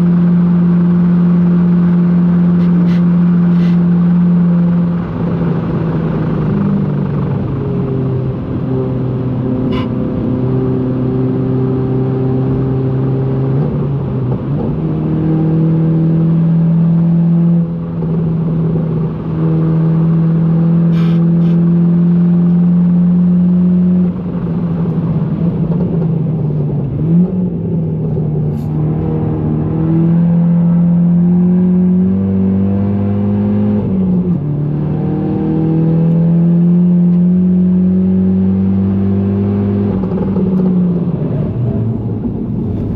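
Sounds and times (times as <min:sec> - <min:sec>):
car engine revving hard: 0:28.5 - 0:42.9.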